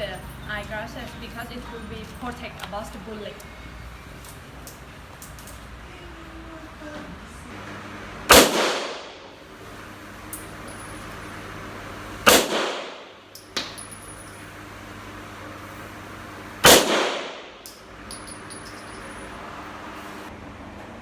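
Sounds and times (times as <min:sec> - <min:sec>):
gunshots with long echo: 0:08.3 - 0:09.3, 0:12.2 - 0:13.2, 0:16.6 - 0:17.6.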